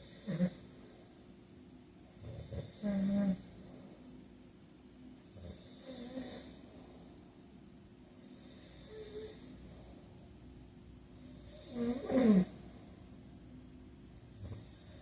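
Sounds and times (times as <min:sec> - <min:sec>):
faint snore: 0:00.0 - 0:00.7, 0:02.2 - 0:03.5, 0:05.3 - 0:06.8, 0:08.2 - 0:09.7, 0:11.2 - 0:12.7, 0:14.3 - 0:15.0.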